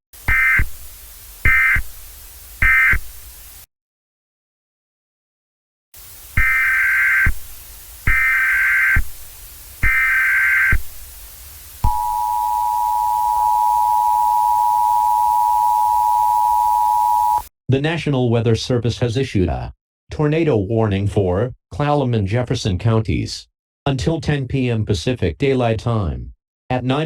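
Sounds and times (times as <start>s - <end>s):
warbling data tones: 0.2s - 0.8s, 6.4s - 9.1s, 9.8s - 10.8s, 11.8s - 17.5s
two-tone attention signal: 11.8s - 17.5s.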